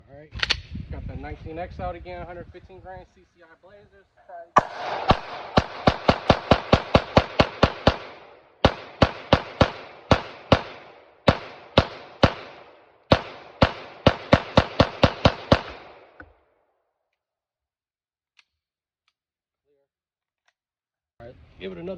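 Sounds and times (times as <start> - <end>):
pistol firing rapid shots: 4.6 - 16.2.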